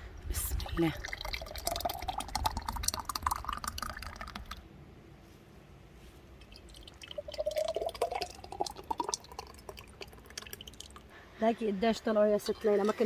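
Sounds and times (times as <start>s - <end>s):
syrup pouring into jar: 1.0s - 4.6s, 6.5s - 11.0s.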